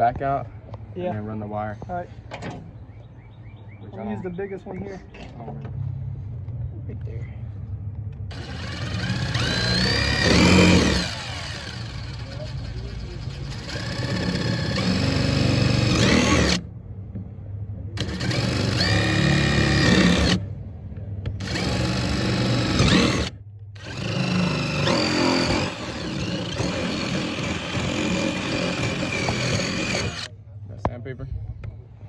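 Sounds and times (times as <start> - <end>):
power drill boring: 8.3 - 16.6, 18.0 - 20.4, 21.4 - 30.3.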